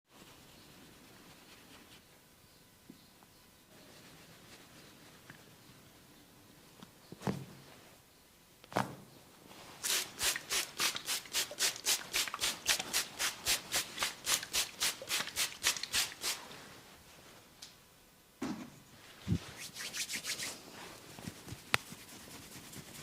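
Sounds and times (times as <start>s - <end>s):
hands rubbing briskly: 19.2s - 23.0s.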